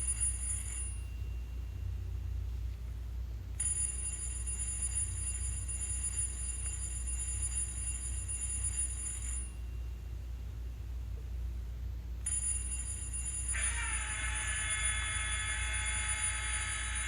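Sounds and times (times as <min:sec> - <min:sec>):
alarm bell ringing: 0:00.0 - 0:02.0, 0:03.6 - 0:10.1, 0:12.2 - 0:17.0
steady low hum: 0:00.0 - 0:17.0.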